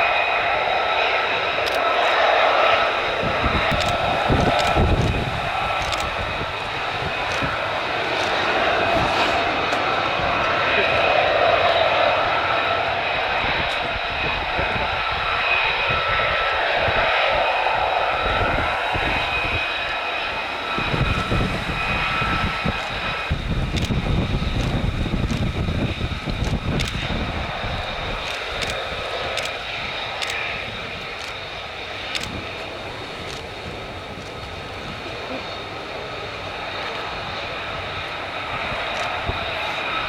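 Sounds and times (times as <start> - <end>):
jet engine high whine: 0.0 - 40.0
sharp clicks: 1.6 - 1.8, 3.6 - 6.2, 26.3 - 27.1, 28.2 - 29.6, 30.2 - 30.4, 31.2 - 31.4, 32.1 - 32.7
deep rumble: 3.0 - 29.5.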